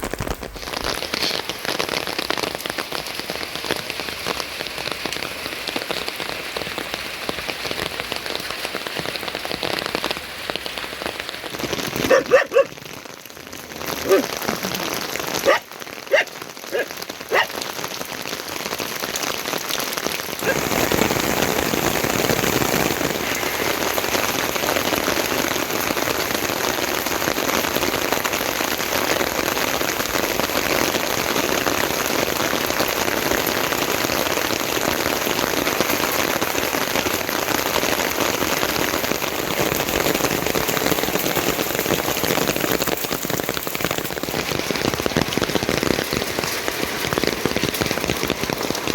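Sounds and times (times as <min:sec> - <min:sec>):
heavy rain falling: 0:00.0 - 0:48.9
loud water drips: 0:10.5 - 0:27.3, 0:38.7 - 0:48.9.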